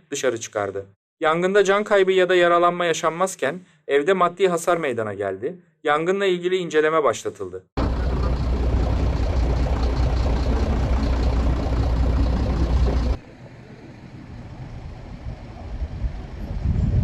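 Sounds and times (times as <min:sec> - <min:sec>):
engine running: 0:07.8 - 0:16.8
background hum: 0:07.8 - 0:17.0.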